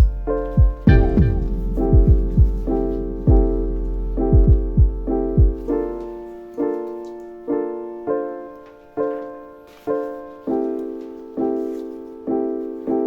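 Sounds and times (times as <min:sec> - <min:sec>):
deep electronic drum beat: 0:00.0 - 0:05.9
piano chords: 0:00.0 - 0:13.0.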